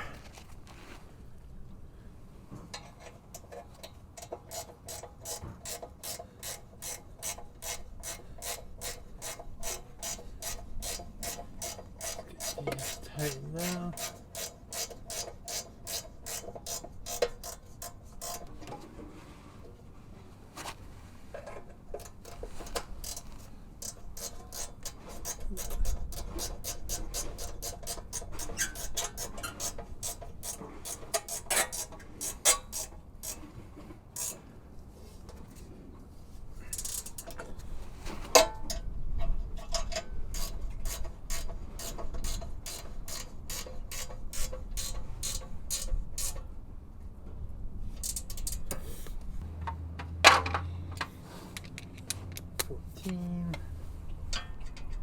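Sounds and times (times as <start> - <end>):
hand ratchet clicking: 3.4 - 18.5, 23.0 - 33.4, 36.8 - 37.4, 48.0 - 48.8.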